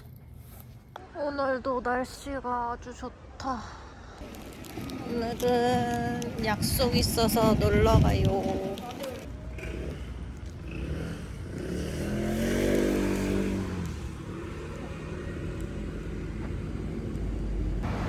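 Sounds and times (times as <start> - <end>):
low rumble of traffic: 0.0 - 18.0
motor vehicle passing by: 9.4 - 18.0.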